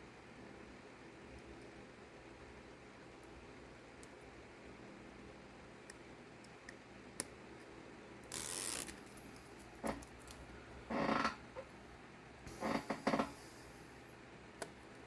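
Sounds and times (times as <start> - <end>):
adhesive tape peeling: 8.3 - 9.7.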